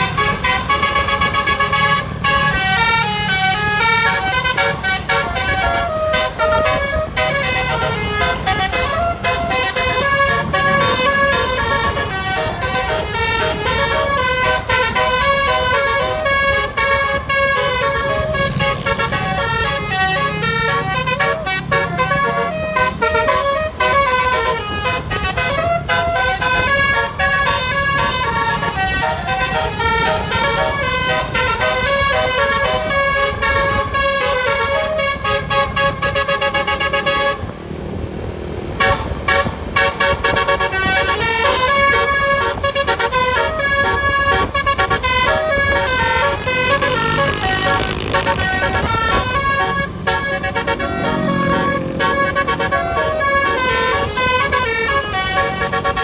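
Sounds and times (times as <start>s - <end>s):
multi-tone bus horn melody: 0.0s - 56.0s.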